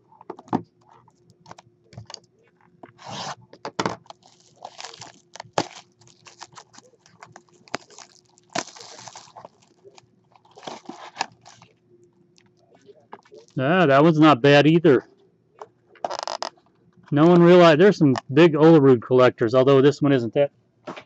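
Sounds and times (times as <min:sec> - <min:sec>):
packaging crinkling and tearing: 0:04.0 - 0:11.8, 0:12.4 - 0:13.6.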